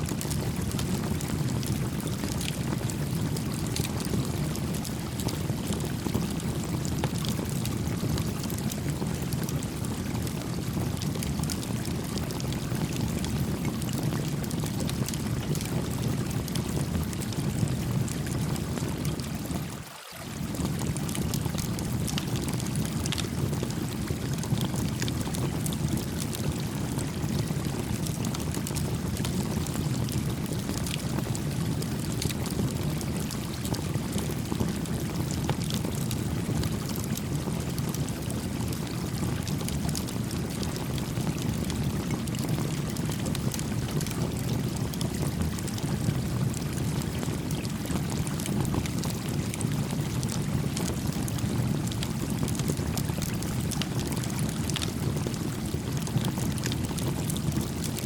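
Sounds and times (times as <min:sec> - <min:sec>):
stream water flowing: 0:19.2 - 0:20.6
campfire crackling: 0:40.9 - 0:51.0, 0:51.9 - 0:53.8, 0:54.4 - 0:58.0.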